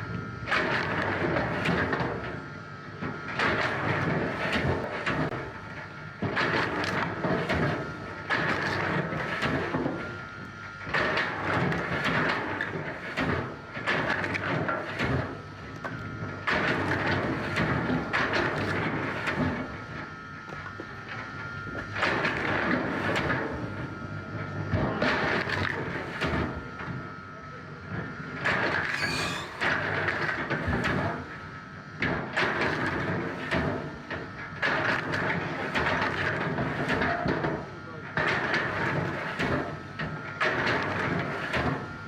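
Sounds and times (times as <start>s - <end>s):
steady machine tone: 28.8s - 29.9s.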